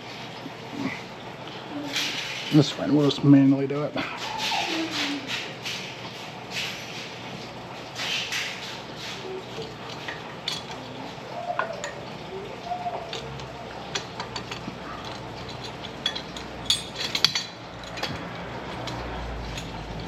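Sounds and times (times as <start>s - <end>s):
light metallic clinks and taps: 13.1s - 20.0s.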